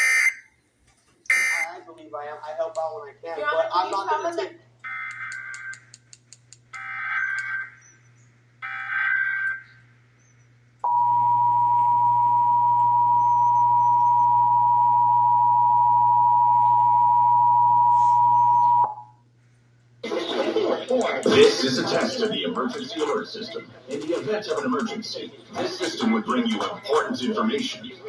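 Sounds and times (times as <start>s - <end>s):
raspy data screech: 1.3s - 1.7s
two-tone attention signal: 10.9s - 19.1s.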